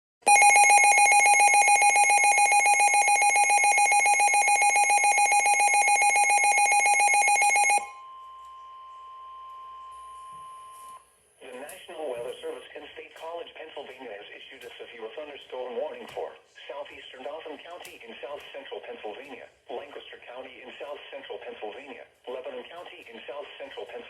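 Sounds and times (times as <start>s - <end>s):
pulsing radio alert alarm: 0.2s - 8.0s.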